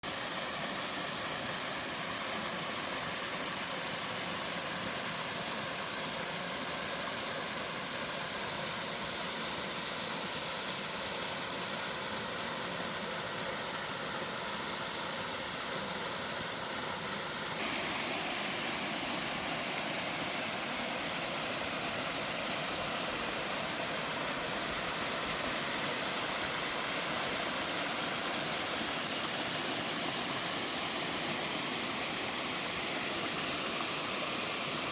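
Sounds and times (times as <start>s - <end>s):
waterfall pouring: 17.6s - 34.9s.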